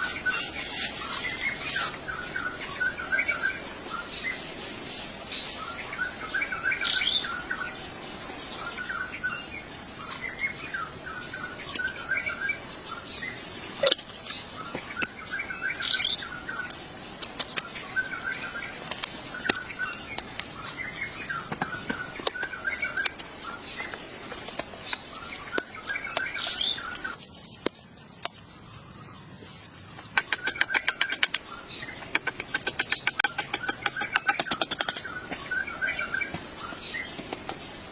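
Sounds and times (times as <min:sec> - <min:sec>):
birds chirping: 0:00.0 - 0:37.9
sharp clicks: 0:30.1 - 0:35.1.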